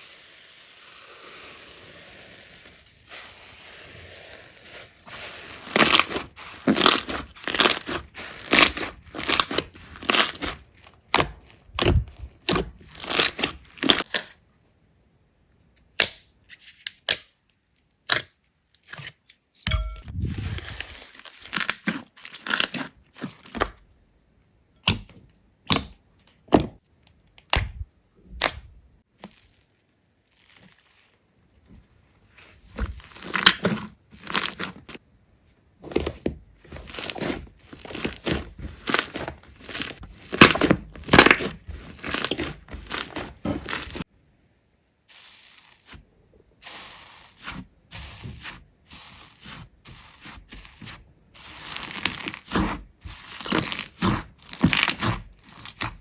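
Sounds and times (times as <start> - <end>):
slime squishing: 0.9 - 14.3, 28.4 - 35.0, 35.8 - 44.1, 45.1 - 56.0.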